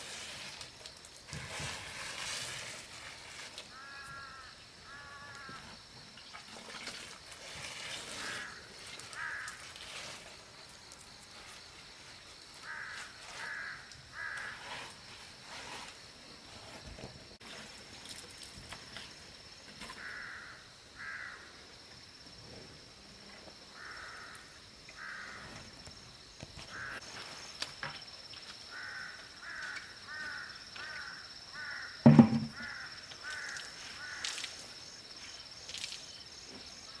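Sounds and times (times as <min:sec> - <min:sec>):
loud thump: 0:32.0 - 0:32.7.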